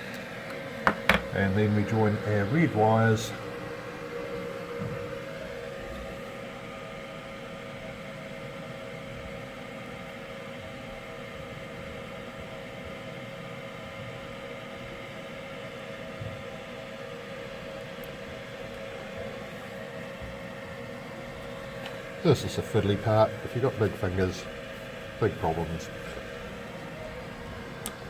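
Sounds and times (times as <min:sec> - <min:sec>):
extractor fan humming: 0:00.0 - 0:28.0.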